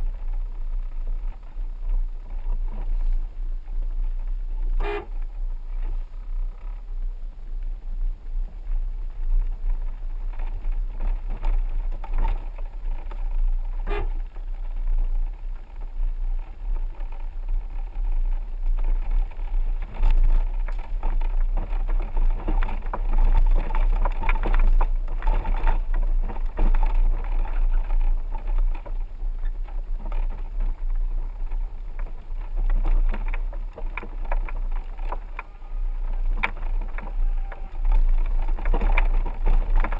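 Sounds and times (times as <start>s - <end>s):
vehicle engine and tyres rumbling: 0.0s - 39.9s
rattles and knocks from bumps: 8.6s - 39.9s.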